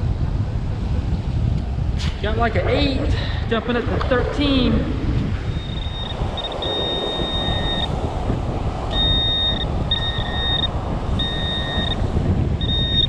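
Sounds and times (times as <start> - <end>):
wind rumble on microphone: 0.0 - 13.0
metal detector beeping: 5.5 - 7.9, 8.9 - 12.0, 12.6 - 13.0.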